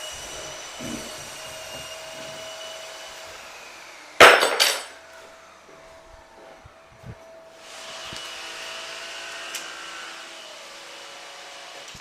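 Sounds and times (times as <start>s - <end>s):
clatter of hard objects: 4.2s - 4.9s.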